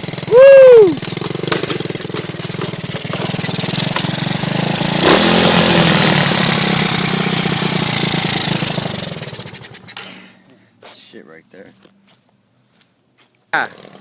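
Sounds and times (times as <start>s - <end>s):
motorcycle engine running: 0.0s - 10.1s.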